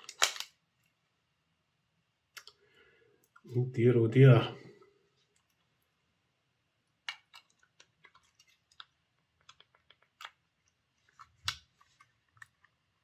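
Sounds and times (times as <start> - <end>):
small clicks and taps: 7.0 - 12.8.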